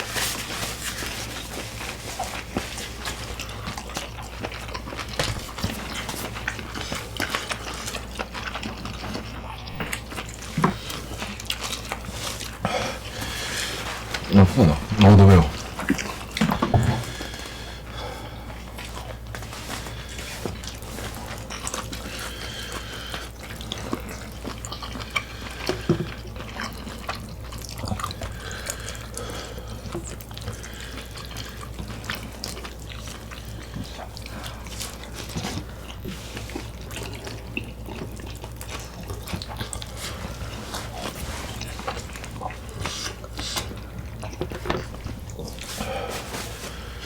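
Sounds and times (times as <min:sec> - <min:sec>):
wet chewing: 0:00.0 - 0:47.0
mouth clicks and smacks: 0:14.2 - 0:17.3.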